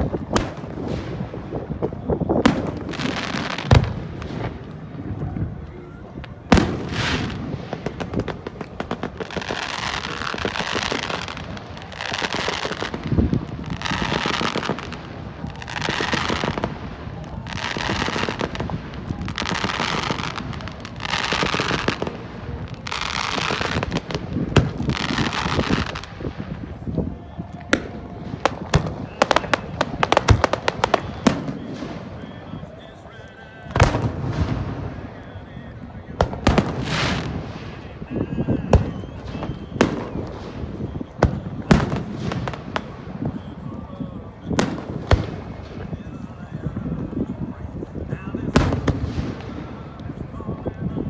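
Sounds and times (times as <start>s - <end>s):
crackling firework shells: 0.0s - 51.0s
sharp firework bangs: 6.5s - 26.8s.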